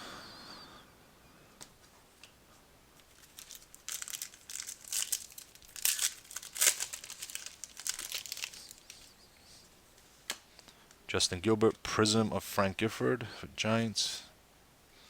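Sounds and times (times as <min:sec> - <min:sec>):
foil wrapper crinkling: 0:03.0 - 0:09.1.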